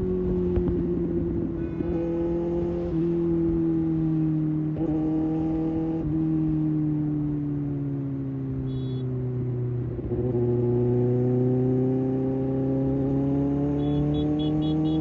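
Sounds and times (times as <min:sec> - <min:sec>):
motorcycle engine running: 0:13.8 - 0:15.0.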